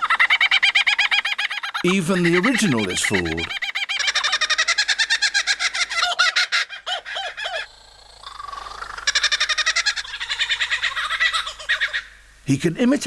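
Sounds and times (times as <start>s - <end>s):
lyrebird chattering song: 0.1s - 5.3s, 6.8s - 12.0s.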